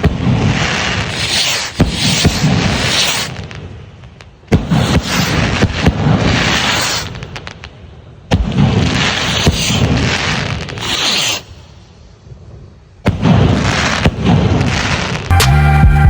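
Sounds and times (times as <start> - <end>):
firework rocket bang: 0.0 - 3.7, 4.5 - 7.5, 8.3 - 11.6, 13.0 - 15.4
firework crackling: 0.0 - 12.0, 13.0 - 15.3.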